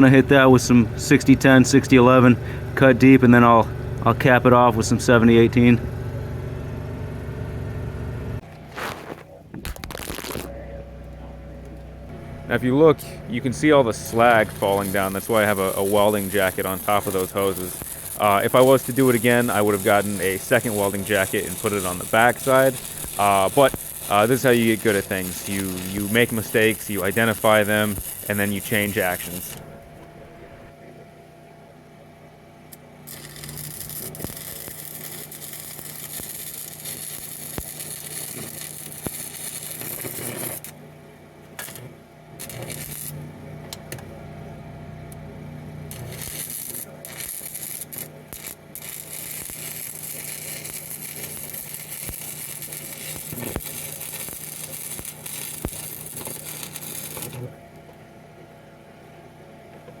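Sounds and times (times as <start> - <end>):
steady low hum: 0.0 - 60.0
welding arc crackling: 8.7 - 10.5, 12.1 - 30.7, 33.0 - 40.8, 41.6 - 44.0, 45.8 - 57.6.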